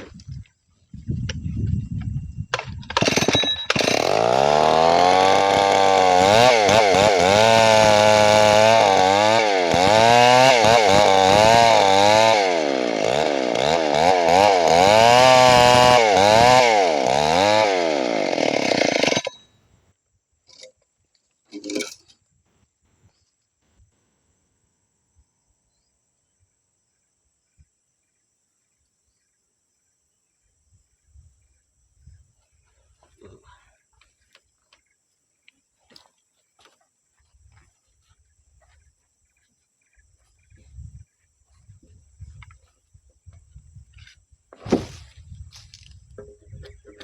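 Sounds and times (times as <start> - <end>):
chainsaw cutting wood: 2.6 - 19.7, 43.9 - 47.0.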